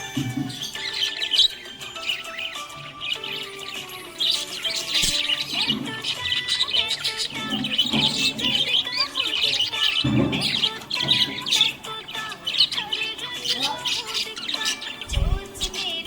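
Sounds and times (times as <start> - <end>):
budgerigars chirping: 0.0 - 16.0
low thumps: 15.1 - 15.8.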